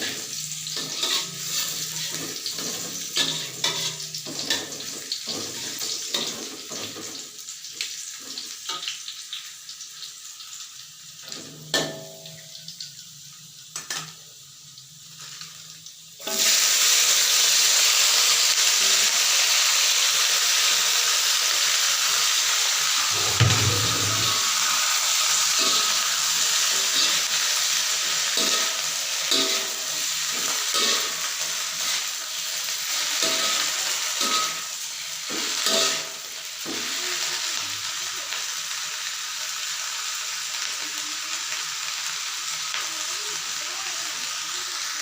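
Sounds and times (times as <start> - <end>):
food sizzling in a pan: 0.0 - 45.0
utensil scraping a pan: 0.8 - 4.0, 23.1 - 24.8.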